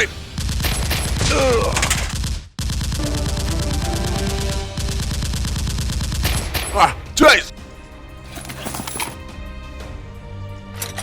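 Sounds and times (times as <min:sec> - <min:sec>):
rapid automatic gunfire: 0:00.4 - 0:06.6.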